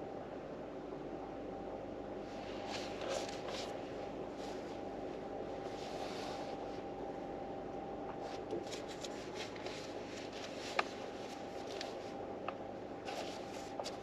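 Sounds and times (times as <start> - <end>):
low hum with faint tone: 0.0 - 14.0
book pages rustling: 2.6 - 3.8, 8.2 - 12.2, 13.0 - 14.0.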